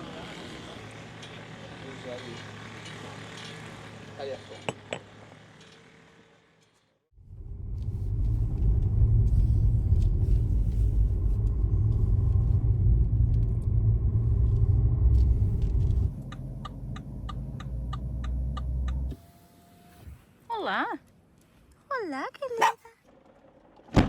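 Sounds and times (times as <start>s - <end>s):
road and engine rumble inside car: 7.2s - 19.9s
turn signal ticking: 16.1s - 19.2s.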